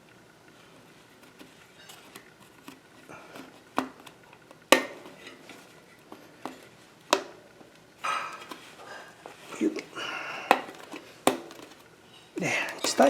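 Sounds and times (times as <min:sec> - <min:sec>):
bicycle parts being handled: 0:10.5 - 0:13.0.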